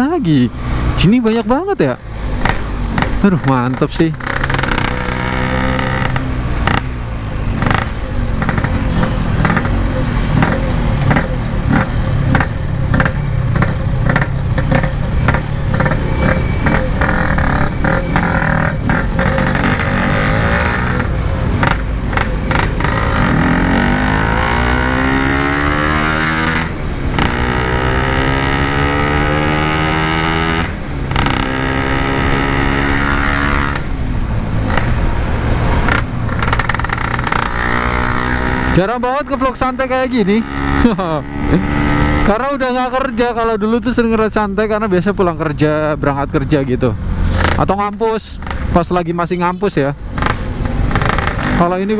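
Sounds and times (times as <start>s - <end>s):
two-stroke motorcycle engine: 2.4s - 33.9s, 50.0s - 51.9s.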